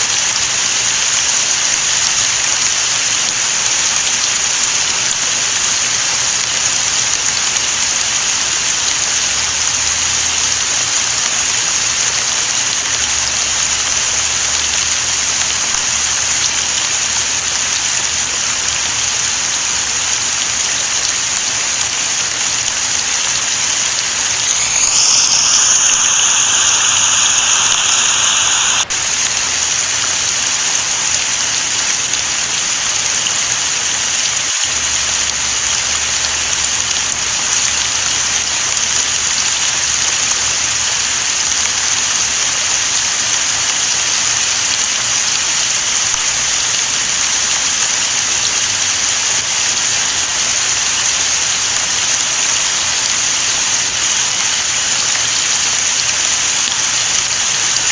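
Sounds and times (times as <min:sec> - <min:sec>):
steady rain falling: 0:00.0 - 0:57.9
high-pitched tone: 0:24.4 - 0:28.9.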